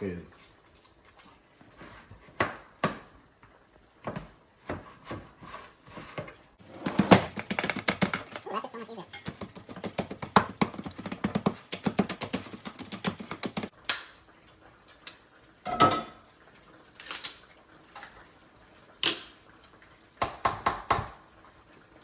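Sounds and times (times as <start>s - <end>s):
kitchenware clinking: 4.1s - 11.2s, 15.6s - 16.4s
utensil tapping against pot: 20.2s - 21.2s.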